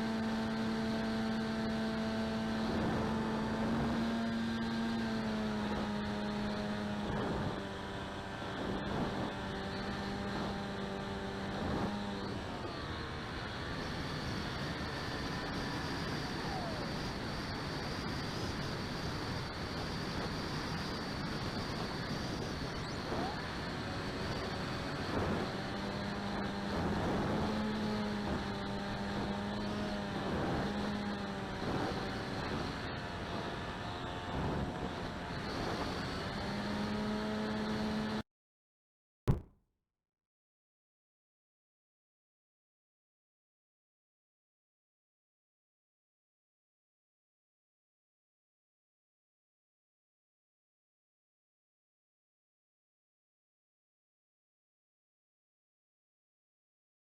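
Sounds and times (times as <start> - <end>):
drone motor and propeller humming: 0.0 - 38.2, 39.3 - 39.5.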